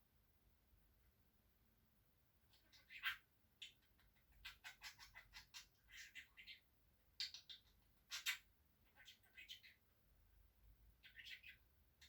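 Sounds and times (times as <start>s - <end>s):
budgerigar chattering: 2.5s - 9.8s, 11.0s - 11.7s.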